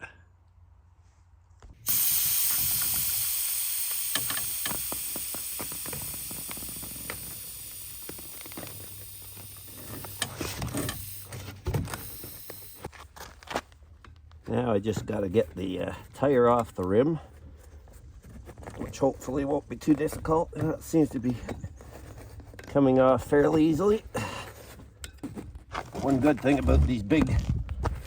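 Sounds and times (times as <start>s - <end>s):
air hissing out of a tire: 1.8s - 12.9s.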